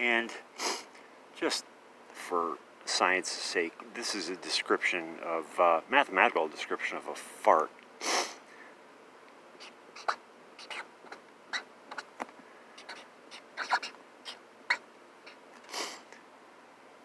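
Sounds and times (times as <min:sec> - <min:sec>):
marker squeaking on cardboard: 0:09.6 - 0:12.1, 0:12.8 - 0:15.9.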